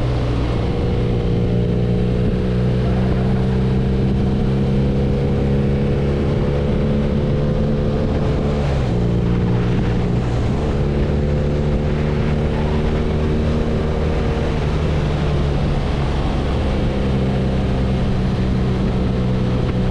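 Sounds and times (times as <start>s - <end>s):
motorcycle engine running: 0.0s - 19.9s
wind rushing: 3.6s - 17.2s.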